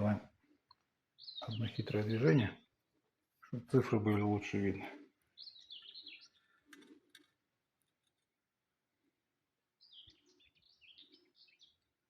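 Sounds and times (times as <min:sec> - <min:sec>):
faint bird chirping: 0:00.0 - 0:03.6, 0:04.4 - 0:08.2, 0:09.7 - 0:12.0.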